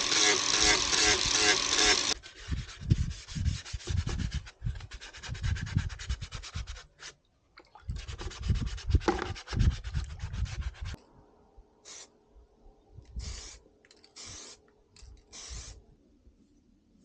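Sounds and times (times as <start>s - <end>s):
hand sanding strokes: 0.0s - 7.1s, 8.0s - 11.0s.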